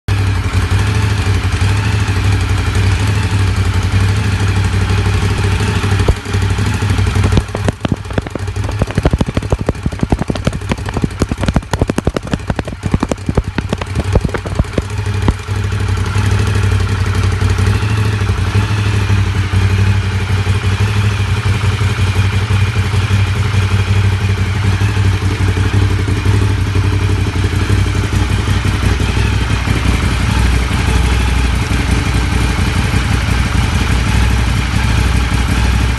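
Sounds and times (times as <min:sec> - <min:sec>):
motorcycle engine running: 0:00.0 - 0:35.9
exhaust pops: 0:04.9 - 0:20.0, 0:24.7 - 0:35.9.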